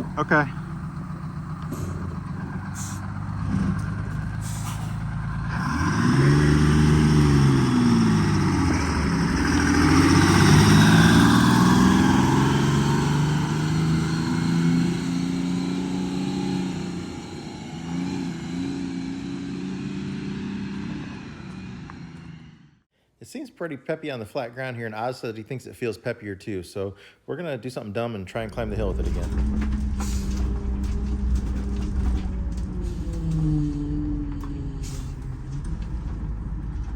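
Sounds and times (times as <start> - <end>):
bus diesel engine: 0.0 - 22.9, 28.4 - 36.9
air brake hisses: 4.4 - 5.1, 29.9 - 30.5.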